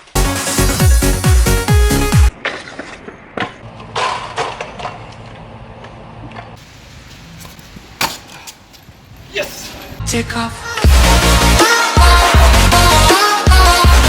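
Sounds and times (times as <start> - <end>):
scooter deck clacking on ground: 2.4 - 6.6, 7.4 - 8.9
scooter wheels rolling hiss: 6.6 - 10.0.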